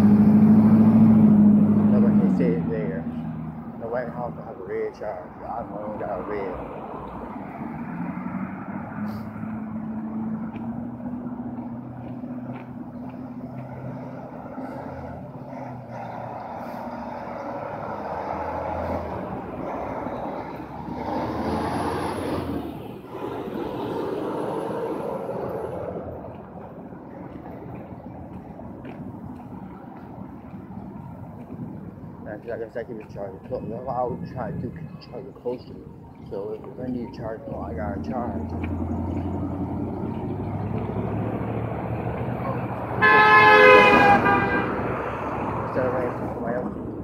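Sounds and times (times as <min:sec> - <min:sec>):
street traffic: 0:00.0 - 0:47.0
vehicles passing: 0:00.0 - 0:47.0
two-tone vehicle horn honk: 0:43.0 - 0:44.9.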